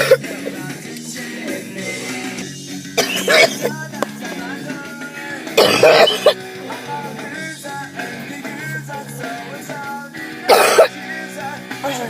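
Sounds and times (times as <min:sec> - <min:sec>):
person coughing harshly: 0:00.0 - 0:00.2, 0:03.0 - 0:03.7, 0:05.6 - 0:06.4, 0:10.5 - 0:10.9
background music: 0:00.0 - 0:12.0.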